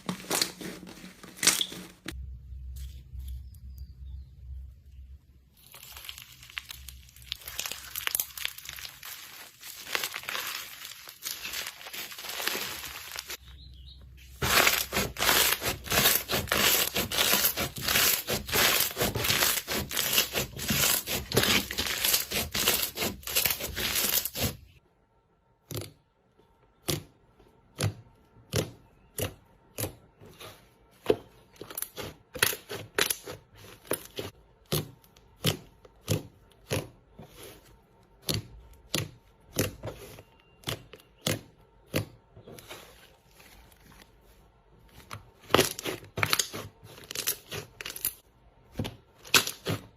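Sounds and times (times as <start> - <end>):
slime crackling and popping: 5.6 - 13.4.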